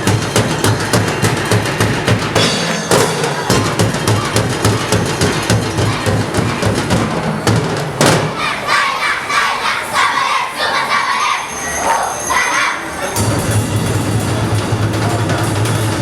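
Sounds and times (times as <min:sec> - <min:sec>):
crowd cheering and shouting: 0:02.9 - 0:07.0, 0:08.0 - 0:13.3.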